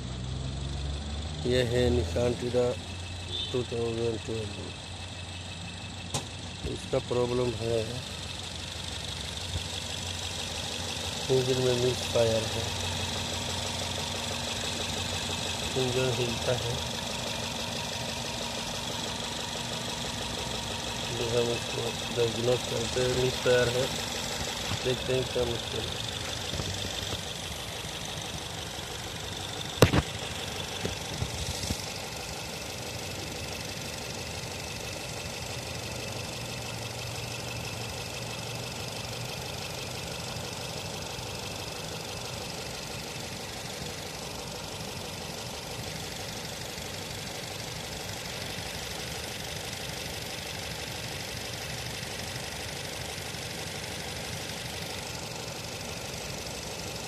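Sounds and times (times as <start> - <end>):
car engine idling with misfire: 0.0 - 57.0
sharp click: 29.8 - 30.2.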